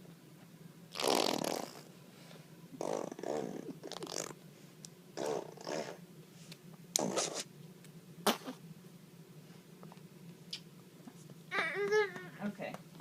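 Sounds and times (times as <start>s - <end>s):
imitation fart noises: 0.9s - 1.9s, 2.8s - 4.4s, 5.2s - 6.0s, 6.9s - 7.5s, 8.2s - 8.6s.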